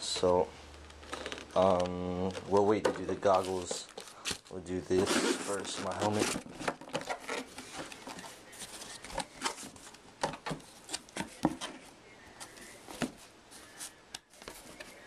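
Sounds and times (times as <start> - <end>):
cardboard box being opened: 4.8 - 9.8.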